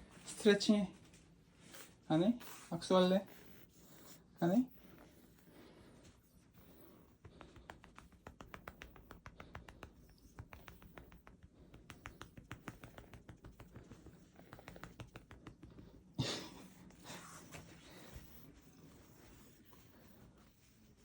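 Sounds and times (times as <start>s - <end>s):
rapid light tapping: 6.5s - 16.2s.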